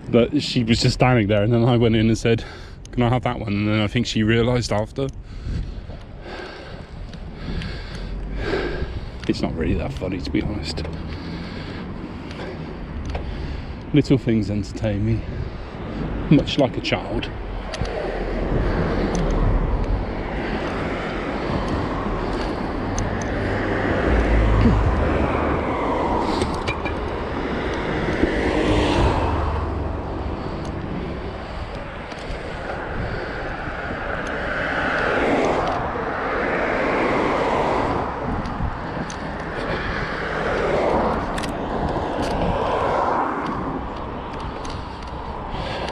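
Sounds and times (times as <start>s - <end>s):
vehicles passing: 0.0s - 45.9s
wind rumbling on microphone: 0.0s - 45.9s.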